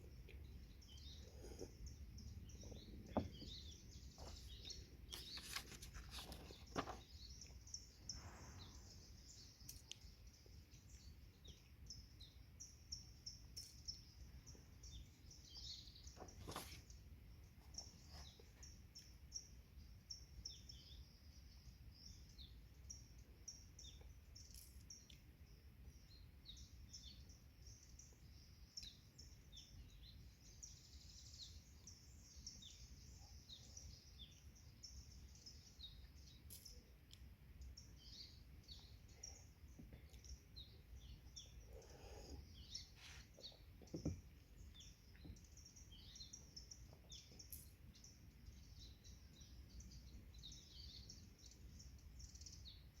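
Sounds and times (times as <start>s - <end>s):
small birds chirping: 0.0s - 53.0s.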